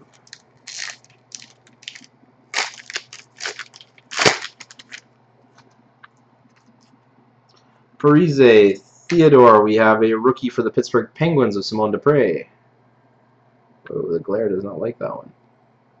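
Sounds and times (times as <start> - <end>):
wrapper crinkling and rustling: 0.0 - 5.1.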